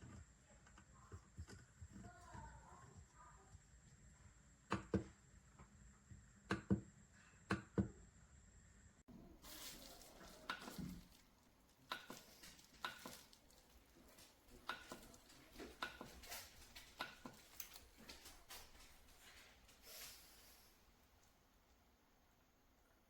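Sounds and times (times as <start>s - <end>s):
faint clicks and taps: 9.6s - 19.8s.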